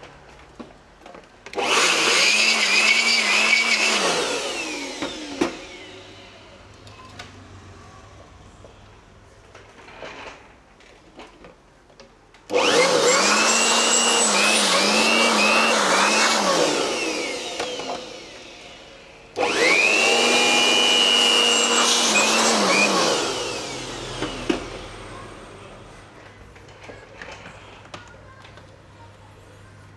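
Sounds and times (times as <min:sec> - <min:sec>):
electric cleaning tool motor: 0:01.6 - 0:06.4, 0:12.5 - 0:25.1.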